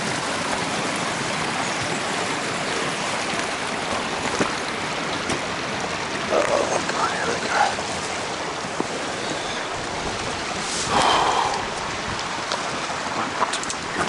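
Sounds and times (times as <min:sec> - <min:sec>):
mountain stream water rushing: 0:00.0 - 0:14.0.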